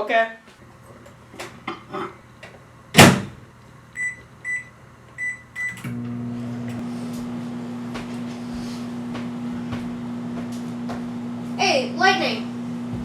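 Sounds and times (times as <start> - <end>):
microwave humming: 1.3 - 13.0
microwave door banging shut: 3.0 - 3.4
keypad beeps: 4.0 - 5.8.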